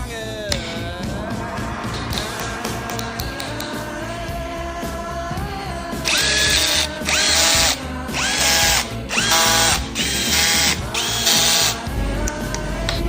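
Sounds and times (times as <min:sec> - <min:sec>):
background music: 0:00.0 - 0:13.0
power drill spinning: 0:06.0 - 0:11.9.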